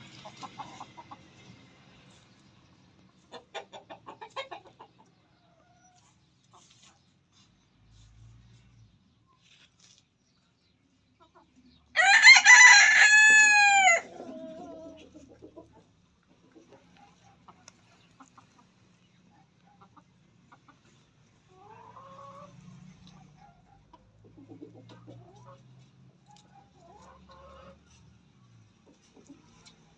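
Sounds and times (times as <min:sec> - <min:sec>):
rooster crowing: 0:12.0 - 0:14.1.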